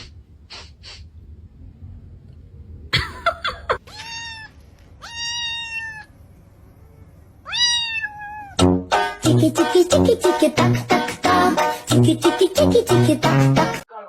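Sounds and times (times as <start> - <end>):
cat meowing: 3.8 - 6.1, 7.4 - 8.6.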